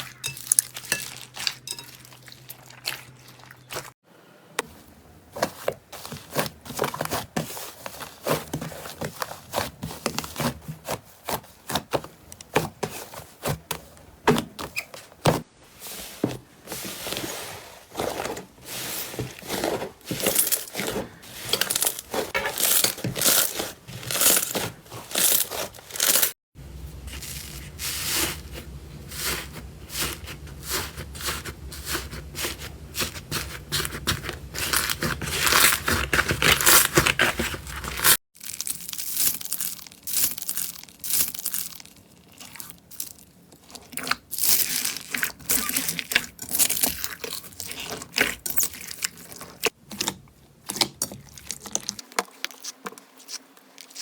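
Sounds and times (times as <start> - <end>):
low steady hum: 26.6 - 30.7.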